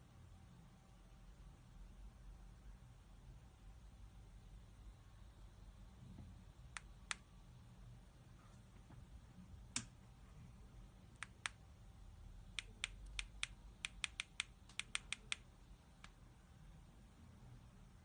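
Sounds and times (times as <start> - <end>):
sharp dry clicks of sight: 12.6 - 16.2.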